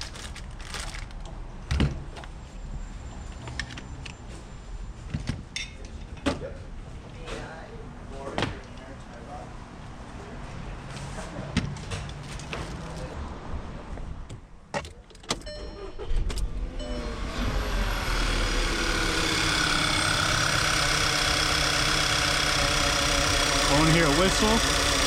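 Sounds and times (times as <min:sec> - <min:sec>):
car engine starting and idling: 0:14.6 - 0:25.0.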